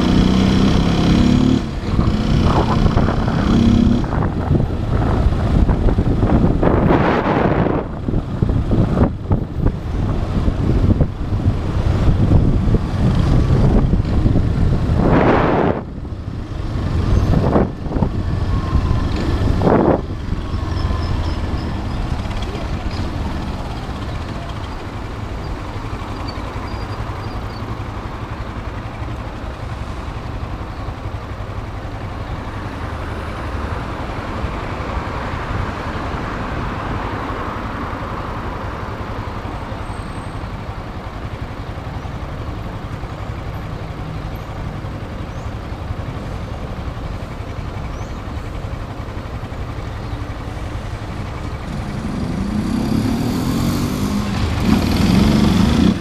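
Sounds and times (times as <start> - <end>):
motorcycle engine running: 0.0 - 35.0, 37.9 - 56.0
city street traffic: 0.0 - 56.0.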